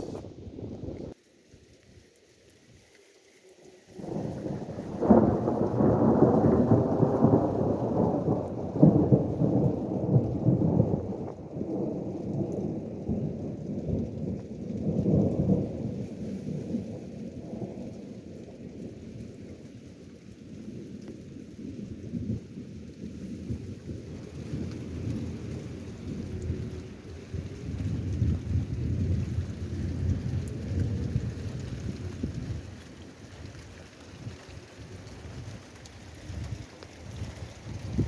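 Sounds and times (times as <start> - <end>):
low thunder rumble: 0.0 - 1.2, 4.0 - 19.4, 21.6 - 38.0
thunder crack: 0.0 - 1.2, 4.0 - 11.9.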